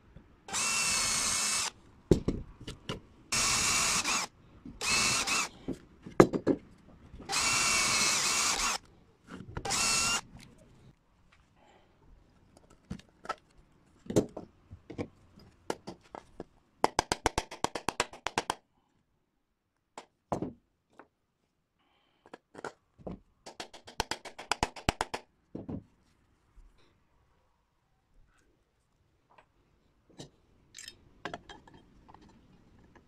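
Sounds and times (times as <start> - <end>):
tools knocking and tapping: 30.1 - 33.0.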